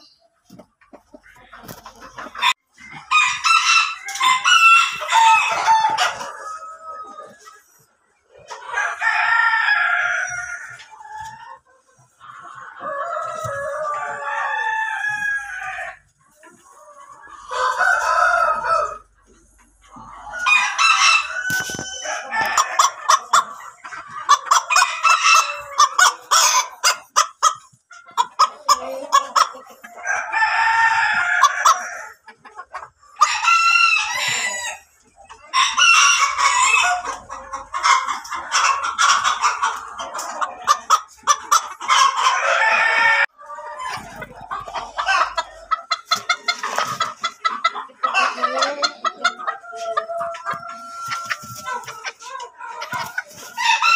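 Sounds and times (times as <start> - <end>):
hens clucking: 0.0 - 53.9
roosters crowing: 2.4 - 7.4, 8.6 - 11.3, 12.7 - 16.0, 16.9 - 19.2, 20.0 - 23.6, 24.2 - 27.1, 28.6 - 32.2, 33.1 - 47.0, 48.0 - 51.9, 52.7 - 53.9.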